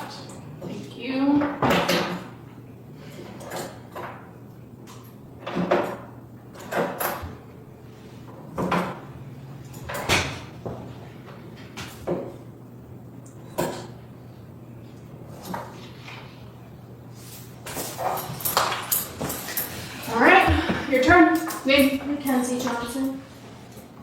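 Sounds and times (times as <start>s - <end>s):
hard objects knocking: 20.2s - 21.7s.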